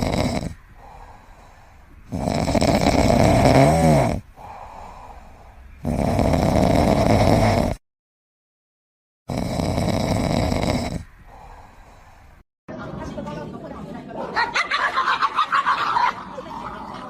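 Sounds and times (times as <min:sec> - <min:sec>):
pet snoring: 0:00.0 - 0:01.1, 0:02.1 - 0:04.9, 0:05.8 - 0:07.8, 0:09.3 - 0:11.7
quiet breaths: 0:00.0 - 0:07.8, 0:09.4 - 0:12.4.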